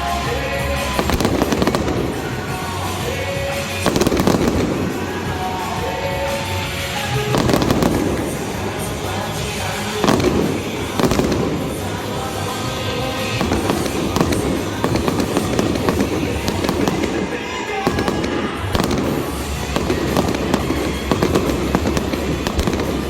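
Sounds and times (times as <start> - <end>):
fireworks bursting and crackling: 0.0 - 23.0
loud music: 0.0 - 23.0.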